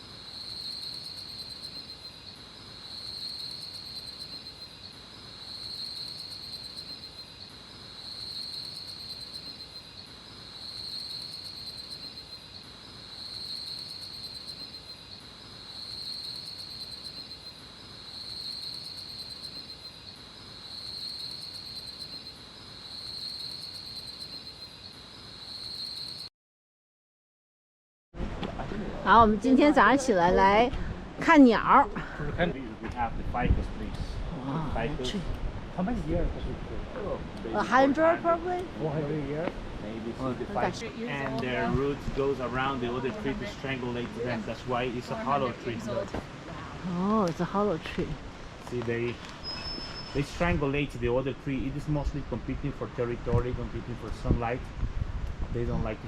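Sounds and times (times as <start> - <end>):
insects trilling: 0.0 - 26.3, 37.0 - 47.8.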